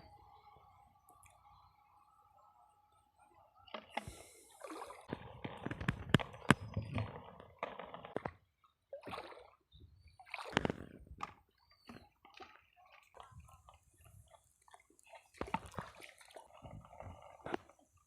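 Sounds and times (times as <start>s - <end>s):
water splashing and sloshing: 3.6s - 18.0s.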